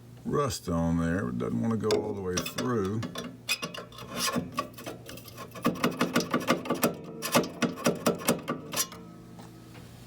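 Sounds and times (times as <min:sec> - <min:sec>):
steady low hum: 0:00.0 - 0:07.7
wrench clicking and scraping metal: 0:01.9 - 0:09.0.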